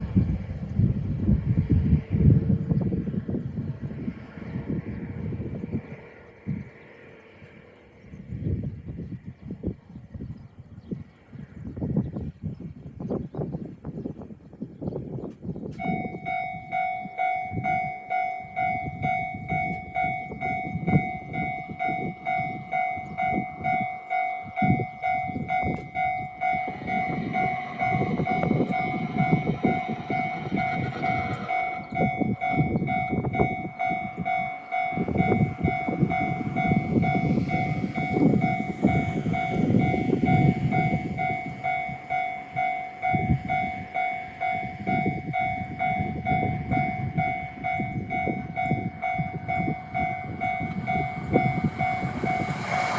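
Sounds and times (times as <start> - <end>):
train wheels rumbling on rail: 0.0 - 52.9
level-crossing alarm dinging: 15.8 - 52.9.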